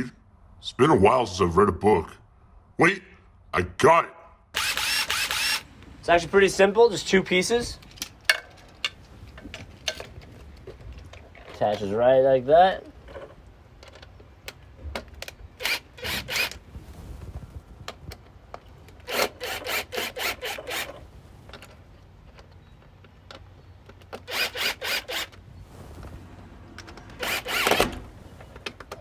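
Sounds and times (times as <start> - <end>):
handling noise: 20.6 - 29.0.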